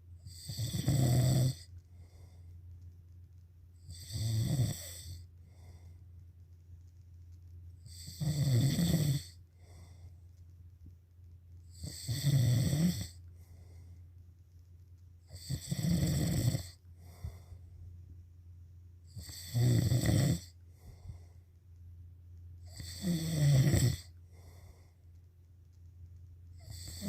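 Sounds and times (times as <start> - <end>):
person snoring loudly: 0.3 - 1.6, 3.9 - 5.2, 7.9 - 9.4, 11.7 - 13.2, 15.3 - 16.8, 19.1 - 20.5, 22.7 - 24.1, 26.6 - 27.0.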